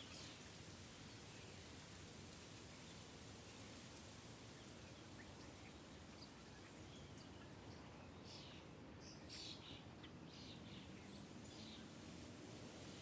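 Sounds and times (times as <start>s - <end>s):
steady outdoor hiss: 0.0s - 13.0s.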